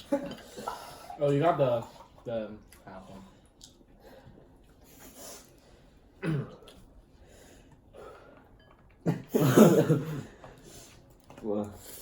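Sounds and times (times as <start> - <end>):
person coughing: 6.2 - 6.7.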